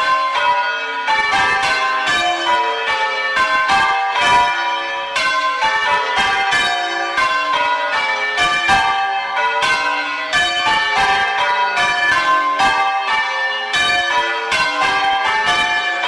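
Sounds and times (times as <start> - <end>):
church bells change ringing: 0.0 - 16.0.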